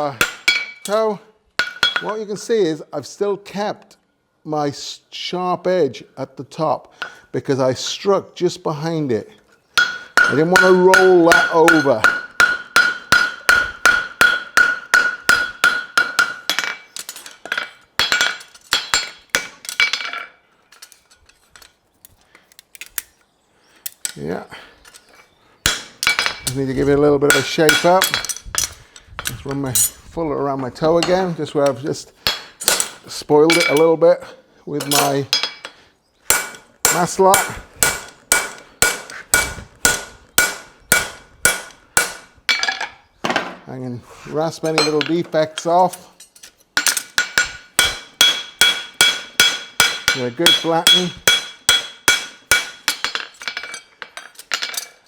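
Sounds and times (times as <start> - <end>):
hammer striking horseshoe on anvil: 0.2 - 0.9, 1.6 - 2.2, 9.8 - 20.3, 25.7 - 26.6, 27.3 - 29.9, 31.0 - 33.9, 36.3 - 42.9, 44.6 - 45.7, 46.8 - 54.9.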